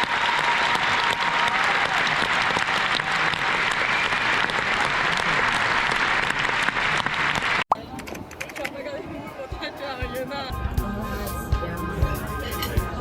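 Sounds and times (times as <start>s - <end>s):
crowd applauding: 0.0s - 7.6s.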